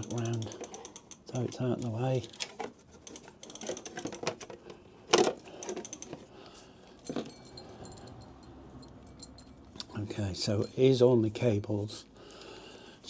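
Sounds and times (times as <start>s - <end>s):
clicks and clinks of cables and parts: 0.0s - 10.0s.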